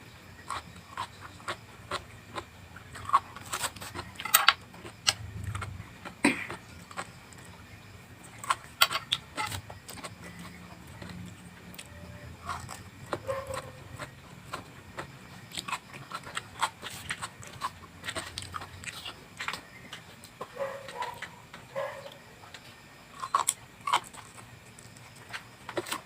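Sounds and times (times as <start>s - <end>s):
person crunching and chewing: 0.3s - 22.5s, 23.1s - 26.0s
small clicks and scrapes: 0.5s - 5.7s.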